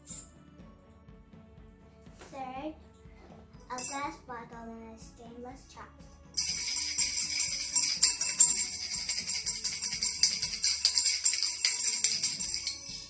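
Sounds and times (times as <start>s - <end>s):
chopsticks clinking on glass bottle: 6.4s - 13.0s.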